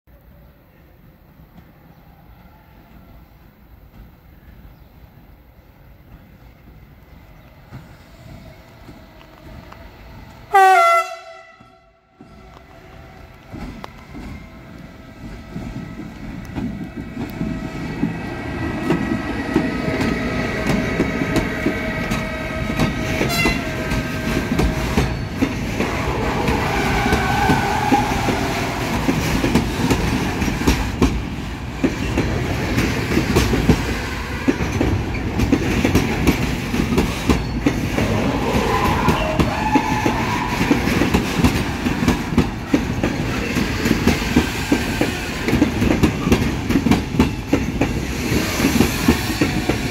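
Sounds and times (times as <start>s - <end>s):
train rumble: 0.2s - 49.9s
locomotive whine: 7.7s - 32.5s, 36.2s - 44.0s
wheel squeals: 24.6s - 28.5s, 37.0s - 40.8s.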